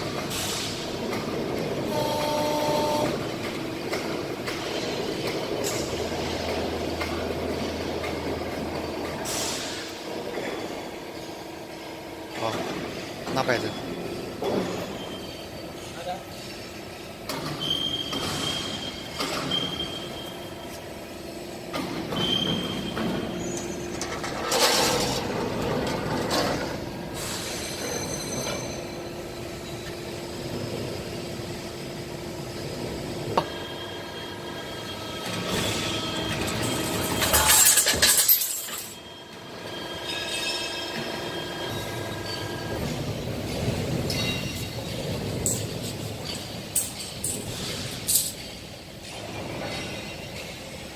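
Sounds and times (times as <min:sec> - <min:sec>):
machine running with faint tones: 0:01.4 - 0:09.1
hydraulic pump hum: 0:01.8 - 0:03.4
loud metallic clatter: 0:35.2 - 0:39.1.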